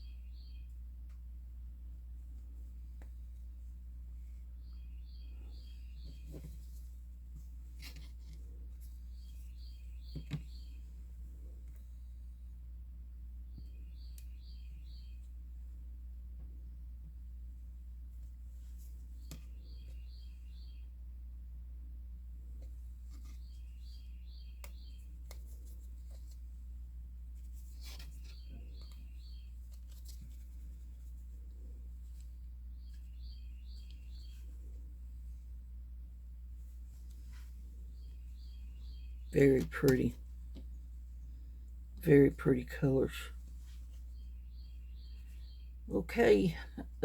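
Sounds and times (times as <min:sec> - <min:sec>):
bird chirping: 0:00.0 - 0:00.8, 0:04.6 - 0:06.7, 0:09.0 - 0:10.9, 0:13.5 - 0:15.3, 0:19.2 - 0:21.0, 0:23.2 - 0:25.2, 0:27.8 - 0:29.9, 0:32.7 - 0:34.8, 0:37.3 - 0:40.2, 0:43.9 - 0:46.9
low electrical hum: 0:00.0 - 0:47.0.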